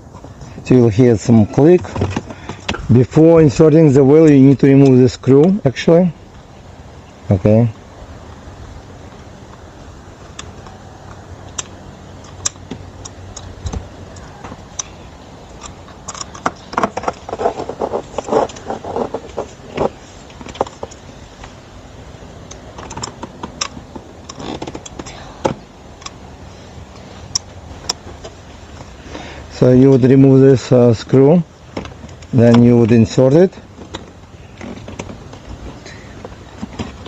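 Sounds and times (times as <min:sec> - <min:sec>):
plastic and metal parts clicking: 0:15.5 - 0:19.2.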